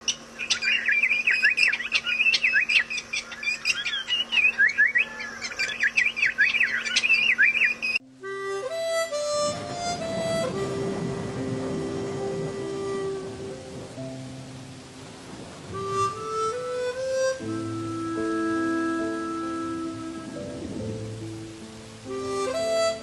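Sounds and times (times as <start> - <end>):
bird calling in sweeping notes: 0.0 - 8.0
faint steady hum: 0.0 - 23.0
music with long held notes: 8.0 - 23.0.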